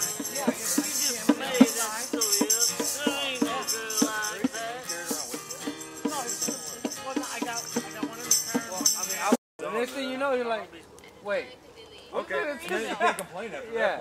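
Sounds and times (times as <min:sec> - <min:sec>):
person singing: 0:00.0 - 0:09.0
shaker rattle: 0:00.0 - 0:09.4
steady beat: 0:00.0 - 0:09.4.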